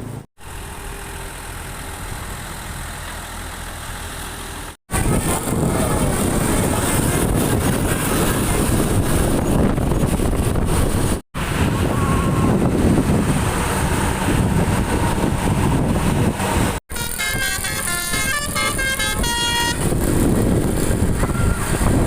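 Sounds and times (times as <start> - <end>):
vehicle engine running: 0.0 - 22.0
rushing wind noise: 4.9 - 22.0.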